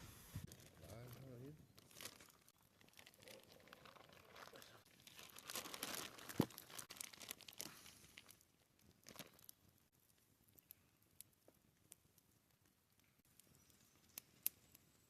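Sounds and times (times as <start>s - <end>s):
bread dough rustling: 0.0s - 9.6s.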